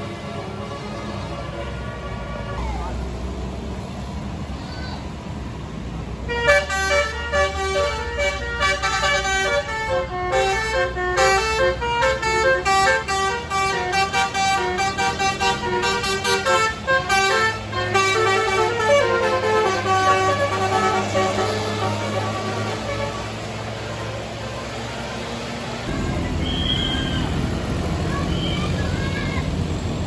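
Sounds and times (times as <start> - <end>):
bus engine running: 0.0 - 30.0
bus horn playing melody: 6.3 - 23.5.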